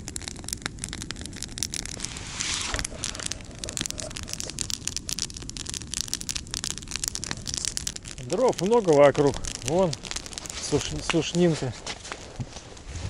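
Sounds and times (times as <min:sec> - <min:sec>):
campfire crackling and popping: 0:00.0 - 0:13.0
wind rumble on microphone: 0:12.2 - 0:13.0.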